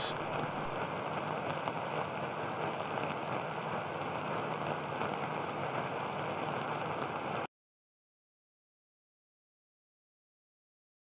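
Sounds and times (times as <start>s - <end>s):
steady hiss: 0.0s - 7.5s.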